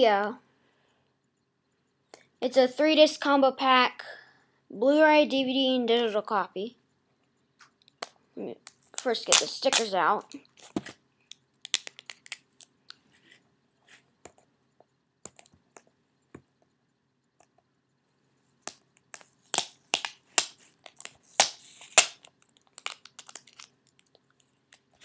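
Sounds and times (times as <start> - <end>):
plastic wrap crinkling: 19.1 - 25.0
stickers peeling off plastic: 19.2 - 24.1.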